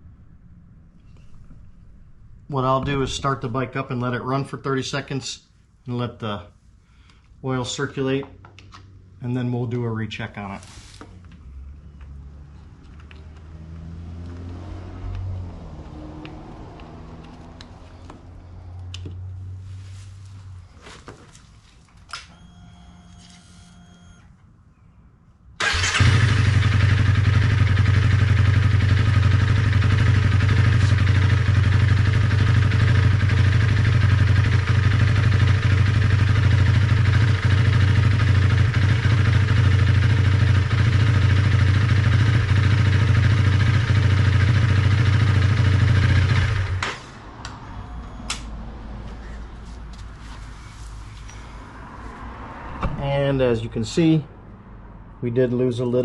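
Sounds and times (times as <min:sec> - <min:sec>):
motorcycle engine idling: 0:25.6 - 0:46.8.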